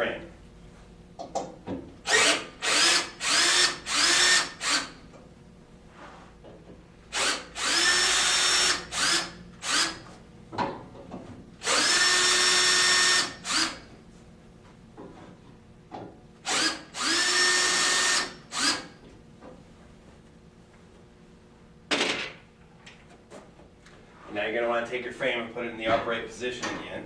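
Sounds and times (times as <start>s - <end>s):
cordless drill whining: 2.1s - 5.0s, 7.1s - 10.0s, 11.6s - 13.8s, 16.4s - 19.0s.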